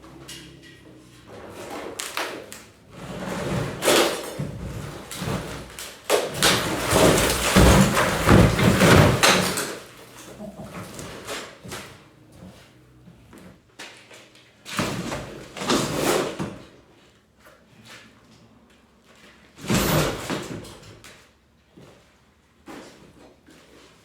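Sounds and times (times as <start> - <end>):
knocking and scraping on wall: 0.1 - 12.5
wall crashing down: 2.9 - 9.8.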